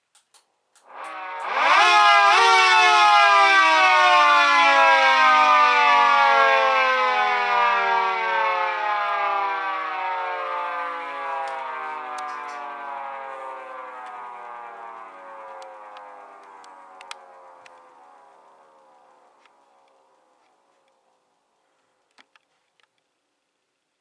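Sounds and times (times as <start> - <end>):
faint clicks: 0.0 - 1.5, 13.3 - 21.0
siren howl winding up and down: 0.8 - 21.0.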